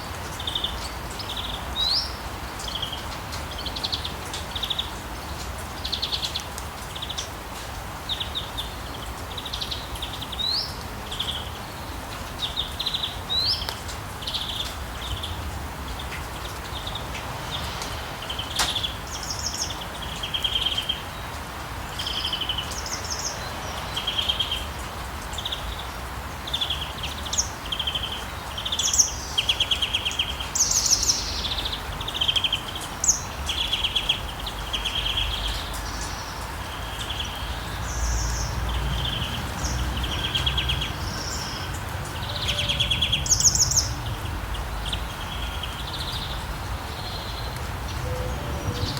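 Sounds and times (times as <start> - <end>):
steady rain on a street: 0.0 - 48.9
birds chirping and singing: 38.2 - 48.9.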